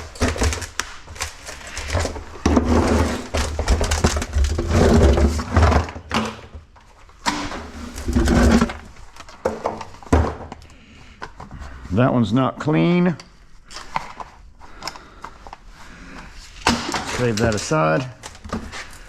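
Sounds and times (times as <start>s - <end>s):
scrap metal clattering and scraping: 2.5s - 5.9s, 7.3s - 9.0s.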